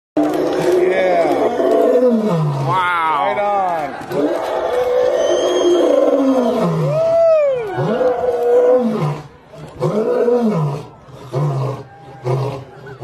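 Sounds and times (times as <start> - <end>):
lion roaring: 0.2 - 3.2, 7.7 - 13.0.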